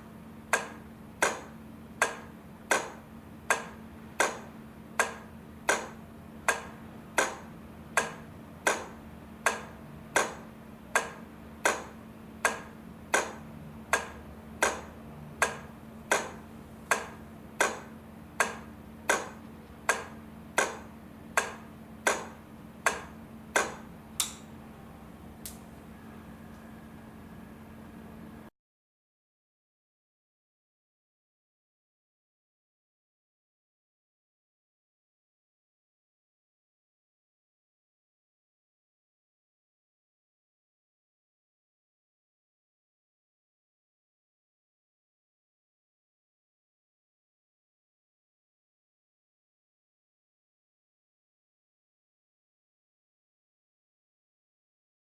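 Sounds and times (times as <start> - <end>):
steady low hum: 0.0 - 28.5
flasher relay clicking: 8.0 - 24.6, 25.4 - 25.9.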